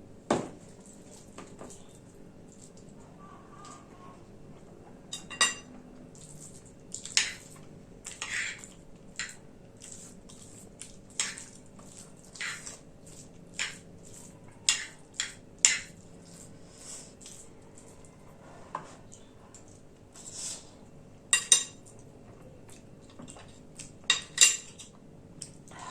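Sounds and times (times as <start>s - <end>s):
cutlery clinking on a plate: 5.1s - 5.8s, 21.3s - 21.9s, 23.2s - 25.0s.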